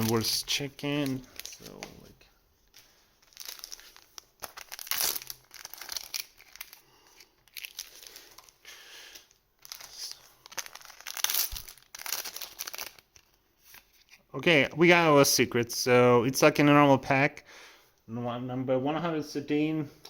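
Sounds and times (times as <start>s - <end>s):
wrappers tearing and crinkling: 0.0s - 14.1s.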